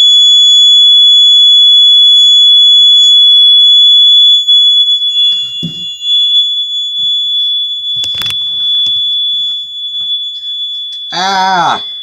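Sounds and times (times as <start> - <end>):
high-pitched alarm buzzer tone: 7.9 - 12.0.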